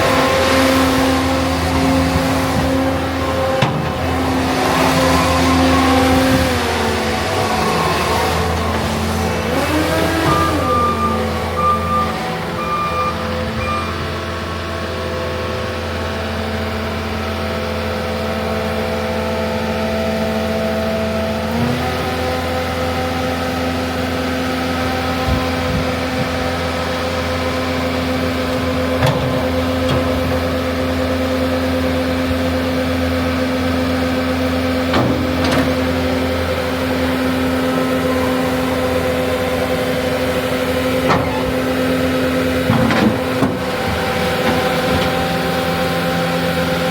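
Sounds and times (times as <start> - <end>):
diesel engine running: 0.0 - 46.9
short electronic beeps: 10.2 - 14.3.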